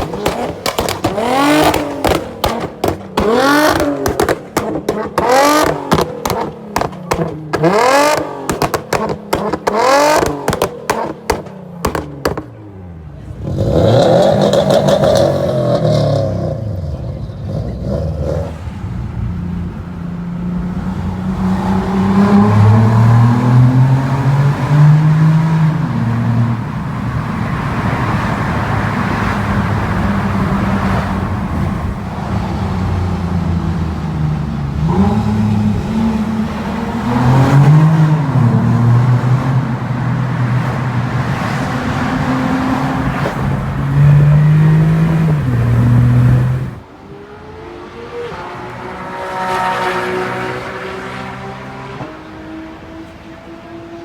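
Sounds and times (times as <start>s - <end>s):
car engine revving: 0.0s - 54.0s.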